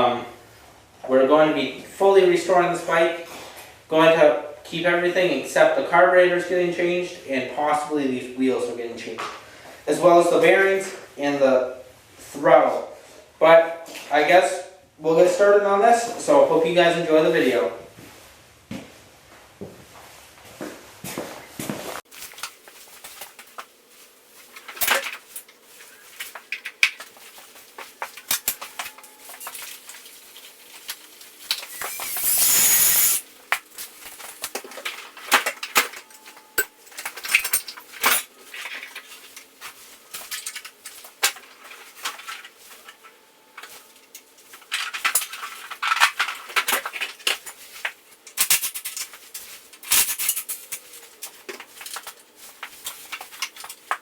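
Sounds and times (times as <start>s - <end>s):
tools and metal parts clinking: 28.0s - 30.1s, 34.2s - 39.5s, 40.1s - 47.6s, 48.3s - 54.0s.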